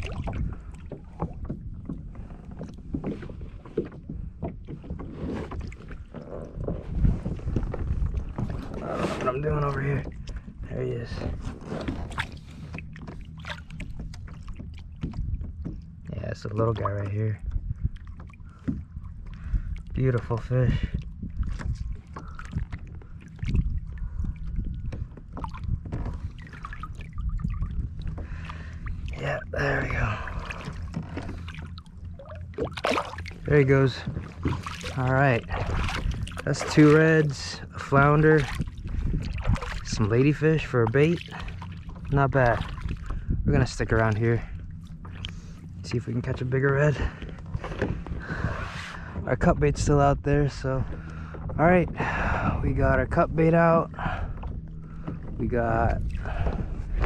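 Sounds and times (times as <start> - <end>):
small water splashes: 0.0 - 3.9, 11.5 - 43.2, 44.0 - 45.6, 55.9 - 57.0
wind rumble on microphone: 0.0 - 57.0.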